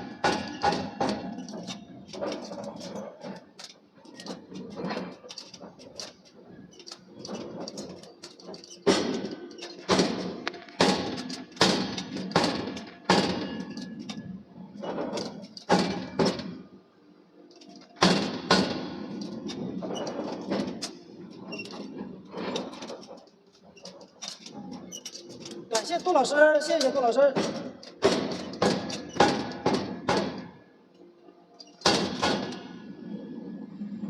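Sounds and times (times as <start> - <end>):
heavy metal knocks and clanks: 0.0 - 16.7, 17.6 - 30.7, 31.8 - 33.0.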